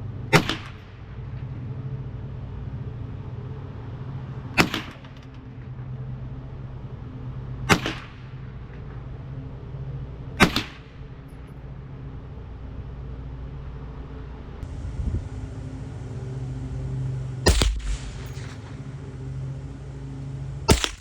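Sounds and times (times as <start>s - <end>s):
steady low hum: 0.0s - 21.0s
rifle shots: 0.3s - 0.9s, 7.7s - 8.3s, 10.4s - 10.9s, 17.5s - 18.8s, 20.7s - 21.0s.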